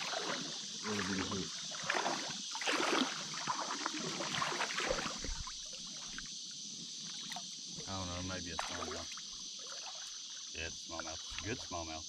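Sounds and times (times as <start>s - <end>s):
water splashing: 0.0s - 6.3s, 7.0s - 12.0s.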